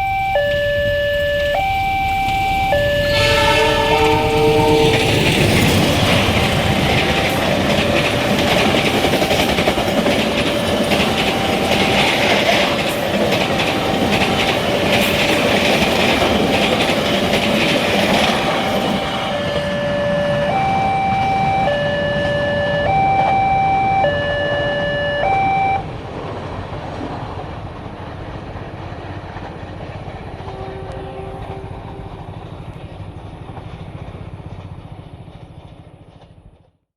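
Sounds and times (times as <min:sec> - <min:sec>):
two-tone crossing alarm: 0:00.0 - 0:25.9
train wheels clattering on rails: 0:03.6 - 0:20.3, 0:26.0 - 0:36.8.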